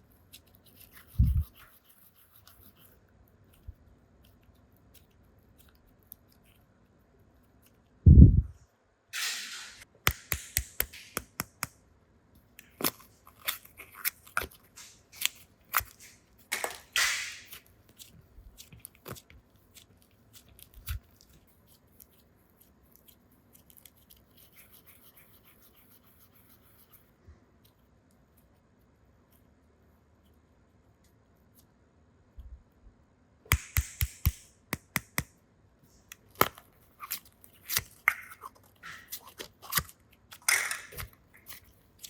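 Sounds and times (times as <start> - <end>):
plastic toys clicking and tapping: 37.8 - 41.6.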